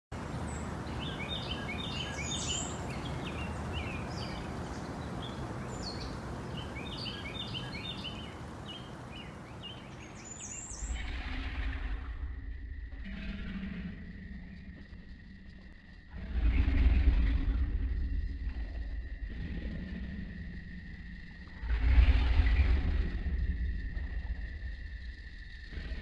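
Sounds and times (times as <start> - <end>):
outdoor background hiss: 0.1 - 26.0
small birds chirping: 0.2 - 12.1
low rumble: 10.6 - 26.0.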